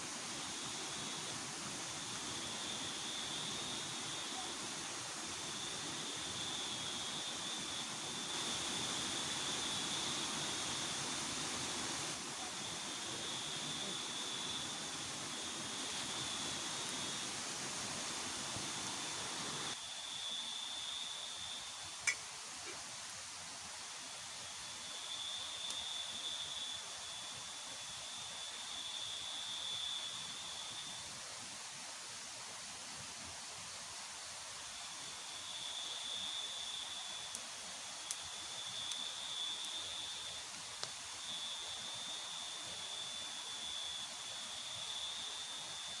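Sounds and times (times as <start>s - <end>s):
high insect drone: 0.1s - 22.8s, 34.7s - 46.0s.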